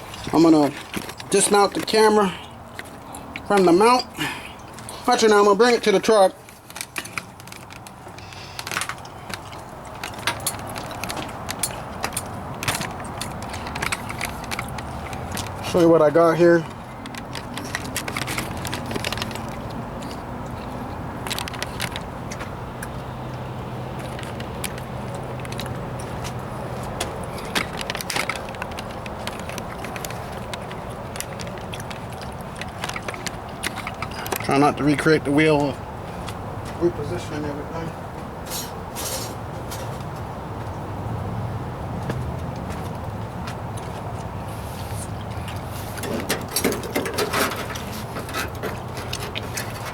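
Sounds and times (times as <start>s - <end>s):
steady background noise: 0.0s - 49.9s
rustling against microphone: 6.3s - 34.6s, 42.6s - 49.9s
clicks and light rattles: 6.4s - 36.4s, 45.0s - 49.9s.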